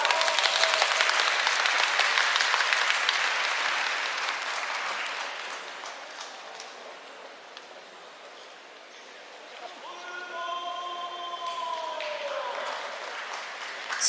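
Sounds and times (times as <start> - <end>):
crowd applauding: 0.0 - 7.1, 11.4 - 14.0.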